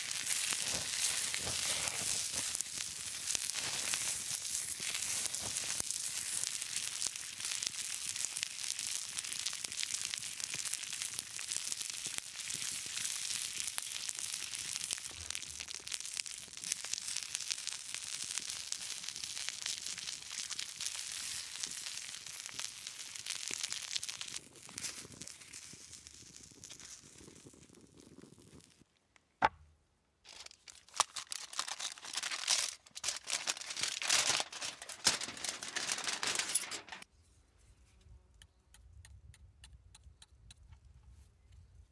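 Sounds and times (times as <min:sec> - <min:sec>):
corn crackling over campfire: 0:00.0 - 0:29.0, 0:30.3 - 0:37.1
husks tearing: 0:30.3 - 0:37.0.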